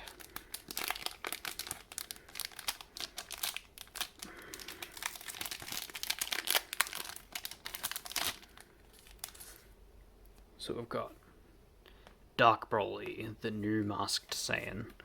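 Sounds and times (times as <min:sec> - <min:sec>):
foil wrapper tearing and crinkling: 0:00.0 - 0:09.6.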